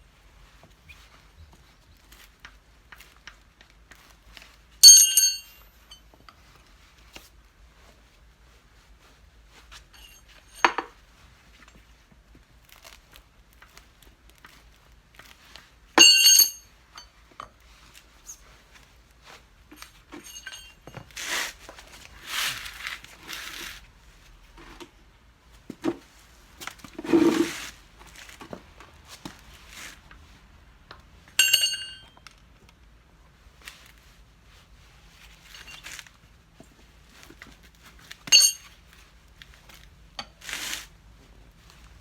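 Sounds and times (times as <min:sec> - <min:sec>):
metal tools clinking: 0:04.8 - 0:06.0, 0:09.9 - 0:10.9, 0:16.0 - 0:17.1, 0:19.8 - 0:21.2, 0:31.4 - 0:32.2, 0:38.3 - 0:38.8
scraping and rubbing: 0:20.1 - 0:23.9, 0:26.8 - 0:28.8, 0:40.4 - 0:41.0.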